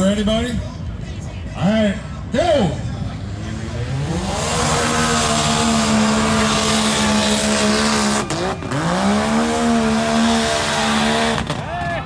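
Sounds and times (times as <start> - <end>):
atv engine revving: 2.3 - 11.9.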